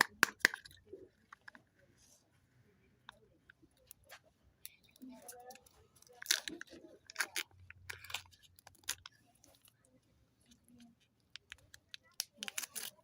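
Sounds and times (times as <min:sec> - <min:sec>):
wrapper crinkling and crunching: 0:04.7 - 0:09.8, 0:11.4 - 0:13.0.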